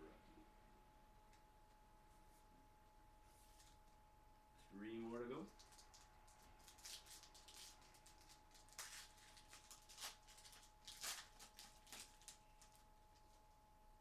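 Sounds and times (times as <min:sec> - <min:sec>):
faint electrical hum: 0:00.0 - 0:14.0
card wrapper crinkling and rustling: 0:05.5 - 0:13.4.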